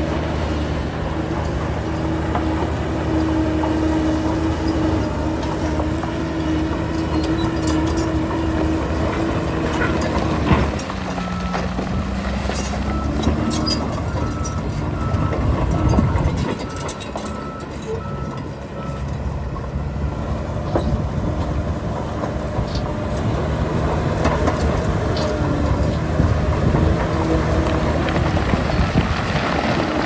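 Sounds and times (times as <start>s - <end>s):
diesel engines of heavy machinery: 0.0s - 30.0s
reversing alarm beeping: 10.6s - 21.0s.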